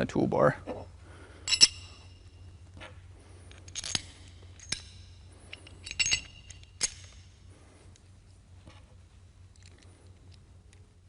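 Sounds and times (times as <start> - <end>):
metallic clinks on steel: 1.4 - 2.5, 3.6 - 7.4.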